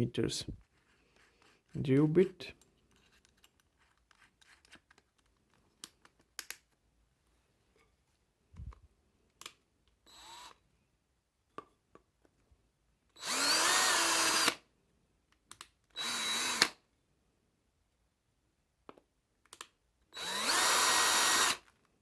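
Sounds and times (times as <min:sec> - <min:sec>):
small clicks and knocks: 0:02.7 - 0:06.8, 0:18.8 - 0:19.8
cordless drill boring into wood: 0:10.1 - 0:10.6, 0:13.2 - 0:14.6, 0:16.0 - 0:16.8, 0:20.2 - 0:21.7.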